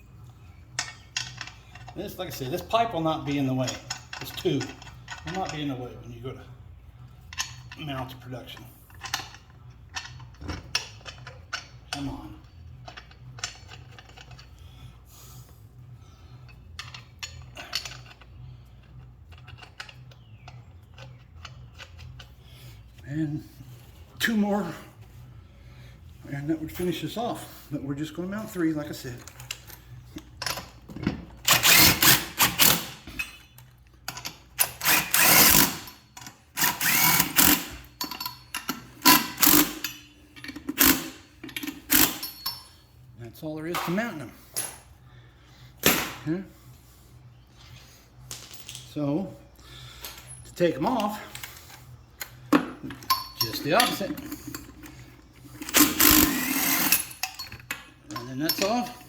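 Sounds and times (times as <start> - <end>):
steady low hum: 0.0 - 59.0
lug nuts clinking: 0.7 - 5.8, 29.0 - 42.8, 49.8 - 59.0
impact wrench clattering: 30.5 - 33.5, 34.1 - 42.7, 52.2 - 59.0.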